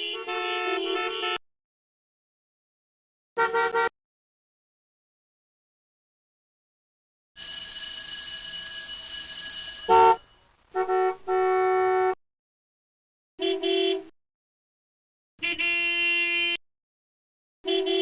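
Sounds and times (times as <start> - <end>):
toy car horn honks: 0.0 - 1.4, 9.9 - 10.2, 17.7 - 18.0
high electronic ringing tone: 7.4 - 10.4.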